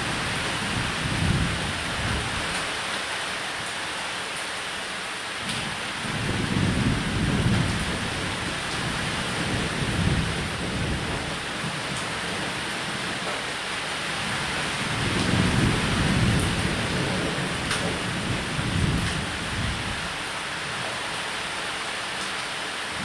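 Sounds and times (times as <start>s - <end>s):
low rolling thunder: 0.0s - 2.6s, 5.5s - 13.3s, 14.1s - 20.3s
rain falling on a roof: 0.0s - 23.0s.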